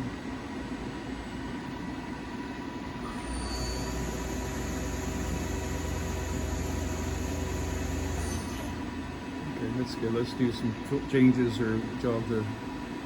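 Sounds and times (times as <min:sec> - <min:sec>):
lathe machine hum: 0:03.8 - 0:09.0.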